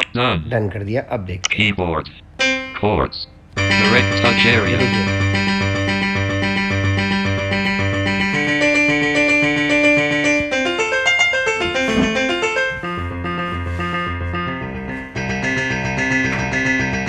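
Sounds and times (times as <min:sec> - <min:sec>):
arpeggiated piano notes: 0:02.4 - 0:02.8, 0:03.6 - 0:17.0
repeating bass note: 0:03.6 - 0:10.6.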